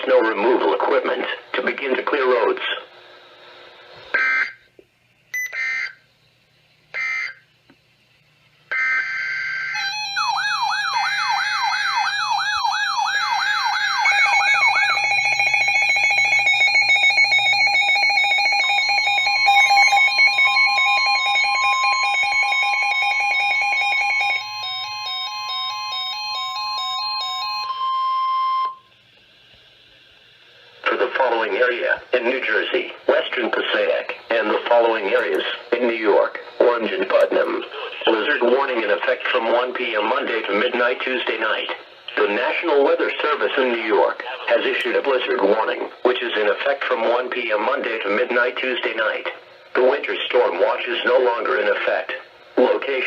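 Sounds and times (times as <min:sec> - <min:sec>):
steady warning tone: 0:04.1 - 0:07.5, 0:08.2 - 0:29.0, 0:30.8 - 0:53.0
digital data bursts: 0:08.7 - 0:27.7
rapid electronic beeping: 0:08.7 - 0:28.8
warbling siren: 0:08.7 - 0:28.8.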